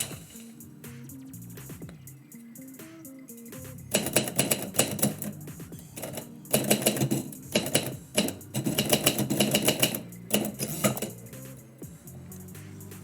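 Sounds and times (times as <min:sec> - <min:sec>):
typewriter keys striking: 0:00.0 - 0:00.4, 0:03.9 - 0:11.4
background music: 0:00.0 - 0:13.0.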